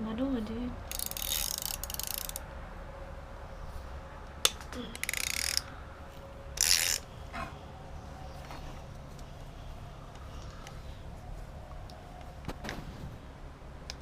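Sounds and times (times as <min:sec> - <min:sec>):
ratchet wrench clicking: 0:00.9 - 0:02.4, 0:04.9 - 0:05.7, 0:06.6 - 0:07.0.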